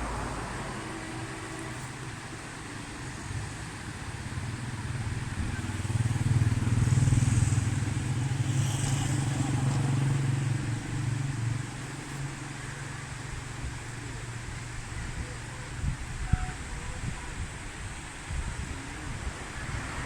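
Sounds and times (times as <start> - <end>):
vehicle engine passing: 3.4 - 14.5.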